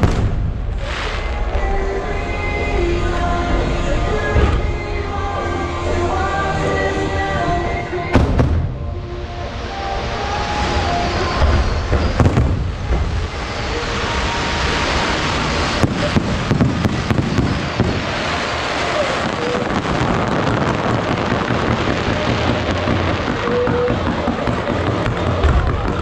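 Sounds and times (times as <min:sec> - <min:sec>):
firework booms: 0:00.0 - 0:01.8, 0:08.1 - 0:09.1, 0:11.2 - 0:26.0
firework crackles: 0:00.0 - 0:26.0
rumbling firework bursts: 0:00.0 - 0:26.0.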